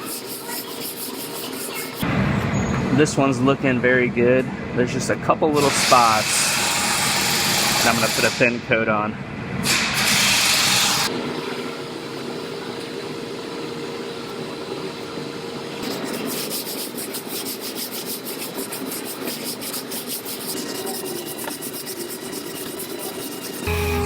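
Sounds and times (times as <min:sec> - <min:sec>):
rubbing and scraping on metal panel: 0:00.0 - 0:02.0, 0:15.8 - 0:23.7.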